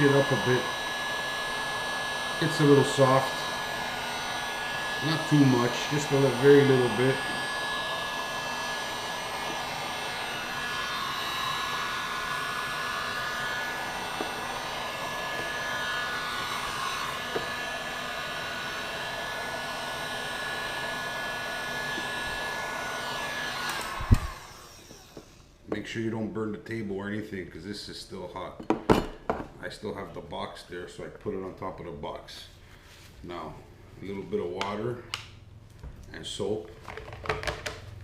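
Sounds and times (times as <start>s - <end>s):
heat gun fan blowing: 0.0s - 25.7s.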